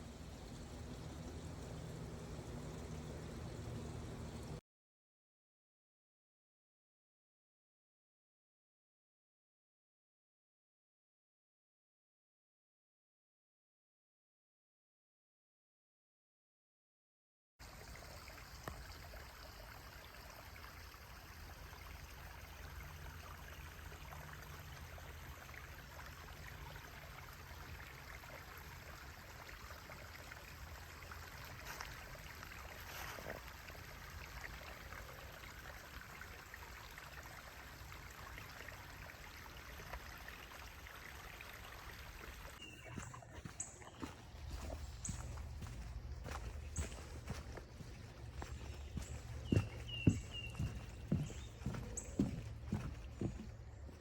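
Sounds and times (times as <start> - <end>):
stream trickling: 0.0 - 4.6, 17.6 - 54.0
footsteps on trail: 42.6 - 54.0.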